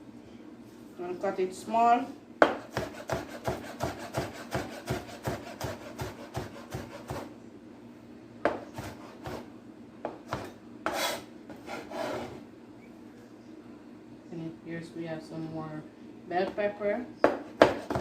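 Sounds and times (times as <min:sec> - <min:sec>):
knife chopping on cutting board: 0:02.4 - 0:07.3, 0:08.5 - 0:09.5, 0:10.1 - 0:11.9, 0:17.2 - 0:18.0.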